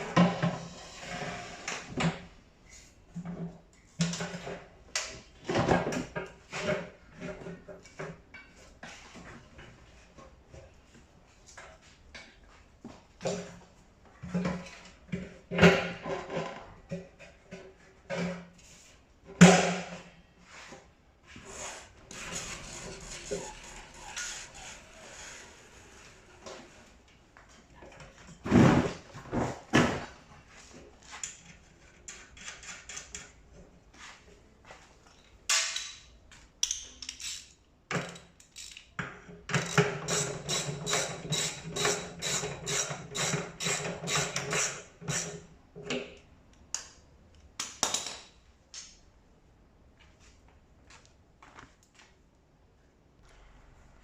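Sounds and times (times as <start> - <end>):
knocks and clatter of parts: 0.0 - 0.7, 3.1 - 10.6, 11.5 - 18.6, 27.4 - 33.8, 35.0 - 46.2, 47.6 - 48.4.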